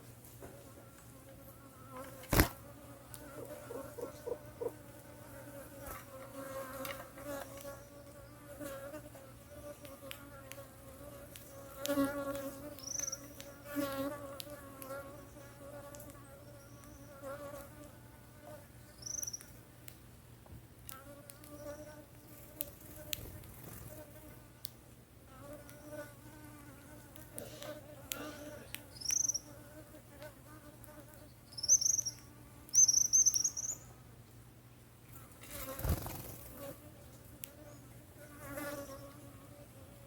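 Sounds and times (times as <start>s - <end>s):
insect buzzing: 0.6s - 19.6s, 20.9s - 24.6s, 25.3s - 34.0s, 35.1s - 40.0s
high bird chirps: 12.8s - 13.3s, 19.0s - 19.4s, 28.9s - 29.5s, 31.4s - 33.9s.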